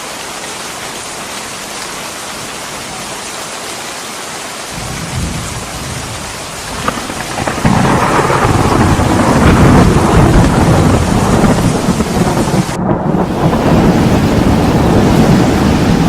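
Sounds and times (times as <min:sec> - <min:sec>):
steady rain: 0:00.0 - 0:16.0
deep rumble of thunder: 0:04.8 - 0:16.0.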